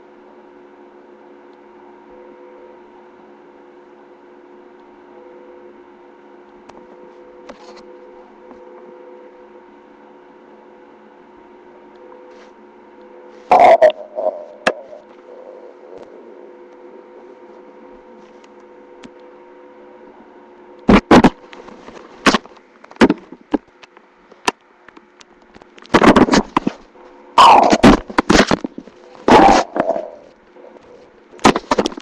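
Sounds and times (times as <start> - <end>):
steady hum: 0.0 - 32.0
stomach growling and gurgling: 13.4 - 17.4, 27.4 - 32.0.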